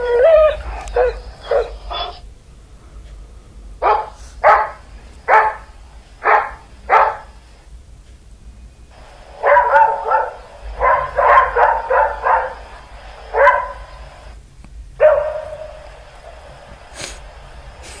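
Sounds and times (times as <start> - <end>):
dogs barking: 0.0 - 2.2, 3.8 - 7.5, 9.0 - 14.3, 15.0 - 16.7.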